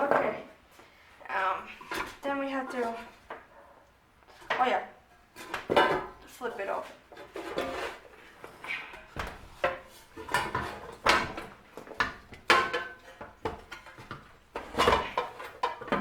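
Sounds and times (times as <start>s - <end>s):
metal parts clanking and rattling: 9.2s - 16.0s.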